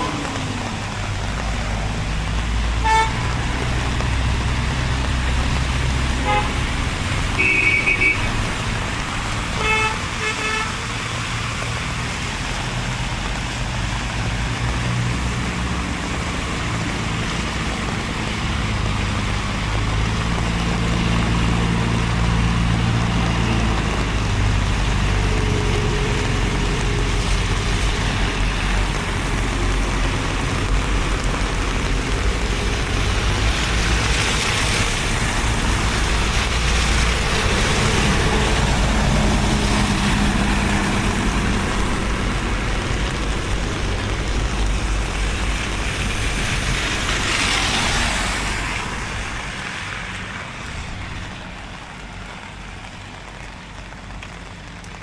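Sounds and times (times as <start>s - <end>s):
road traffic hum: 0.0s - 55.0s
car horn toots: 2.8s - 3.2s, 6.2s - 6.6s, 7.4s - 8.3s, 9.6s - 10.8s.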